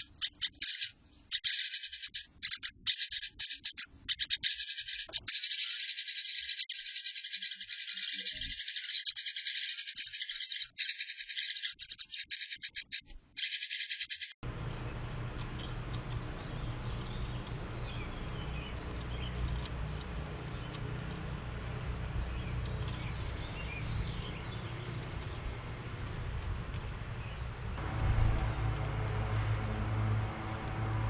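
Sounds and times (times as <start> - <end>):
wren bubbling song: 0.0 - 14.7
faint bird chirps: 0.0 - 14.8
low background rumble: 14.4 - 31.0.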